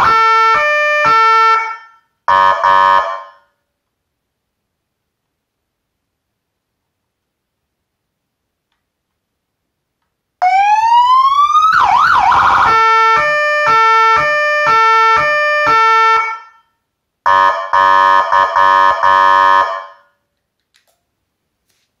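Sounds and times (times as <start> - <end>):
electronic police siren: 0.0 - 3.4, 10.4 - 16.6, 17.3 - 20.0.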